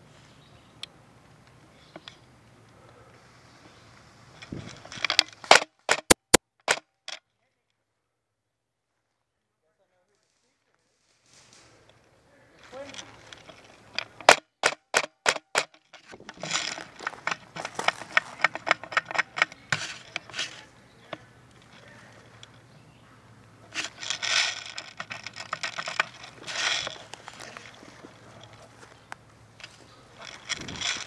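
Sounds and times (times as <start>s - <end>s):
crackling and rustling: 1.2s - 6.4s, 8.9s - 14.4s, 15.6s - 31.0s
quick sharp clicks: 5.4s - 6.8s.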